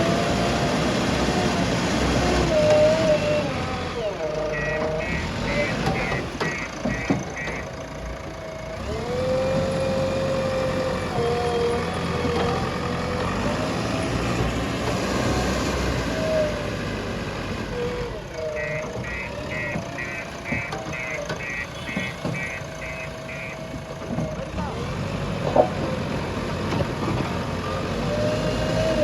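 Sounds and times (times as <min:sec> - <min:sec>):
diesel engine running: 0:00.0 - 0:29.0
reversing alarm beeping: 0:04.2 - 0:07.7, 0:18.3 - 0:23.8.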